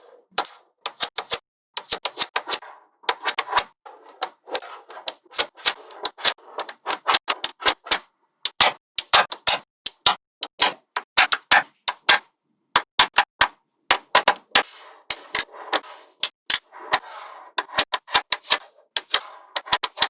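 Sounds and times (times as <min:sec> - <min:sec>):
magnetic balls clicking together: 0:08.5 - 0:12.2.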